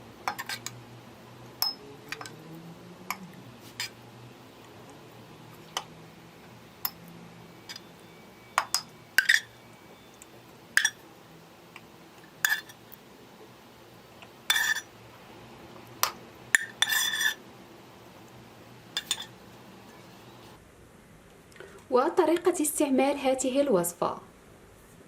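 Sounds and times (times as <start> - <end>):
spoon clinking against glass jar: 1.6 - 2.4, 8.6 - 9.6, 12.4 - 12.8, 19.0 - 19.3.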